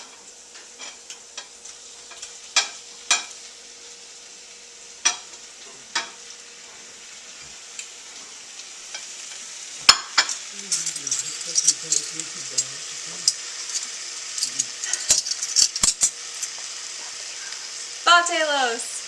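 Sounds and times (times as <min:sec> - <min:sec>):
faint steady sizzle: 0:00.0 - 0:19.0
spoon clacking against pot: 0:09.9 - 0:16.6
spoon stirring in a pot: 0:09.9 - 0:16.6.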